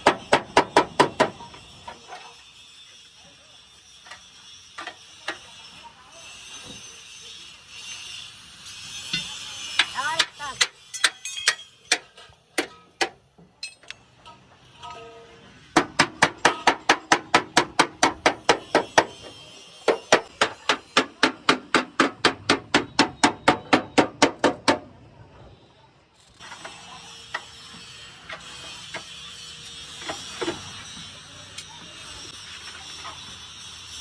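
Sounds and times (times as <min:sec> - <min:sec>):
hammer striking metal: 0:09.2 - 0:14.4, 0:15.8 - 0:24.9.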